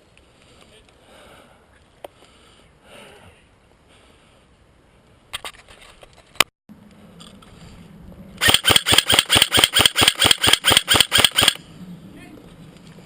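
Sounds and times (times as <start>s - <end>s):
airsoft gun firing full auto: 8.4s - 11.6s
sharp clicks: 8.4s - 11.6s.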